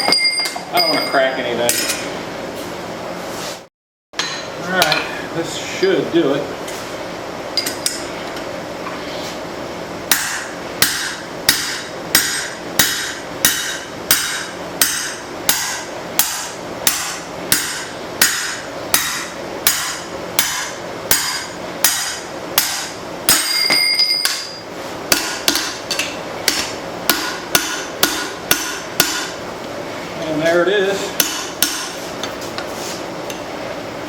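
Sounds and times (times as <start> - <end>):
metal ringing tone: 0.0 - 1.6, 23.3 - 24.7
hammer striking hot steel: 10.1 - 29.4, 31.2 - 32.0.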